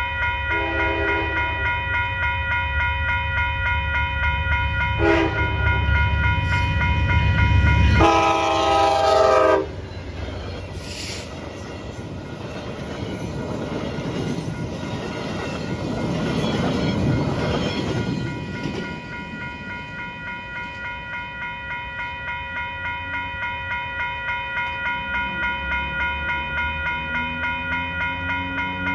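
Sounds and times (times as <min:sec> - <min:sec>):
pulsing ringing: 0:00.0 - 0:10.9, 0:13.0 - 0:28.9
heavy rumble of locomotive: 0:00.0 - 0:28.9
locomotive air horn blasts: 0:00.5 - 0:01.5, 0:05.0 - 0:05.6, 0:08.0 - 0:09.7
train cars rolling by: 0:03.5 - 0:28.9.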